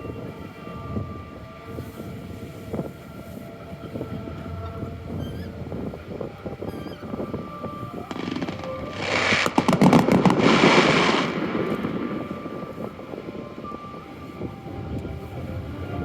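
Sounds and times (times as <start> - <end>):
crowd and festival noise: 0.0 - 16.0
firecrackers crackling: 8.0 - 13.7.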